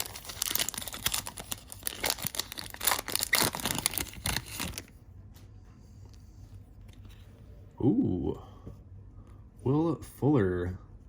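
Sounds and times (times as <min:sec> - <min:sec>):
foil pack tearing and crinkling: 0:00.0 - 0:04.9.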